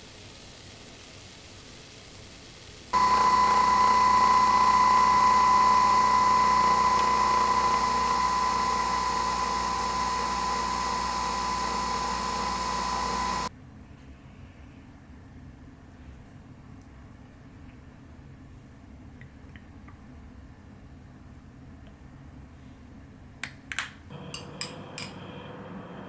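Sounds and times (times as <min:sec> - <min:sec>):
small electric motor whining: 0:03.0 - 0:13.5.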